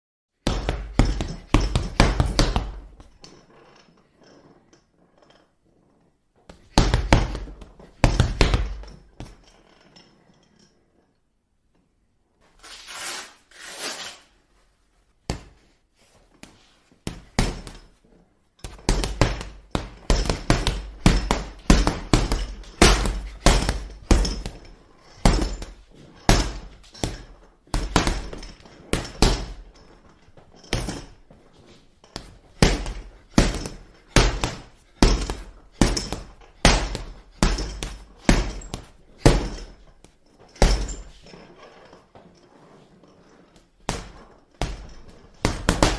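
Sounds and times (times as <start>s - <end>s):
punches hitting punching bag: 0.4s - 3.0s, 6.5s - 9.4s, 17.0s - 17.9s, 18.6s - 29.8s, 32.2s - 39.9s, 40.6s - 41.1s, 43.9s - 45.9s.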